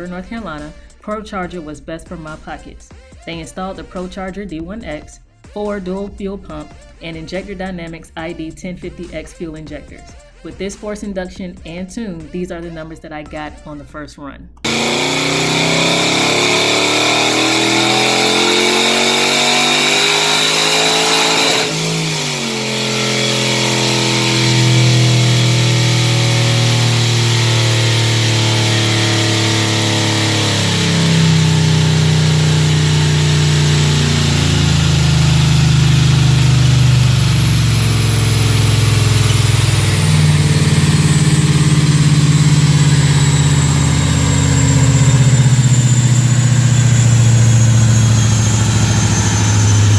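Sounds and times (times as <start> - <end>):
car engine revving: 14.6 - 49.9
supercharger whine: 14.7 - 49.9.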